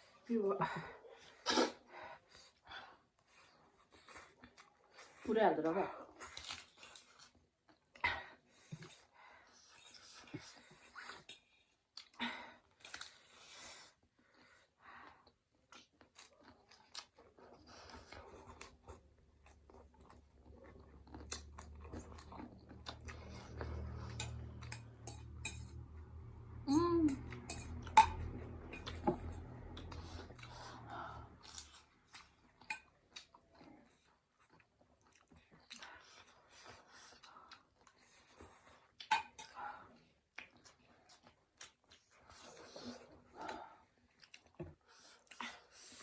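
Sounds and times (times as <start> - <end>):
noodles being chewed: 6.0 - 46.0
low hum: 21.6 - 31.4.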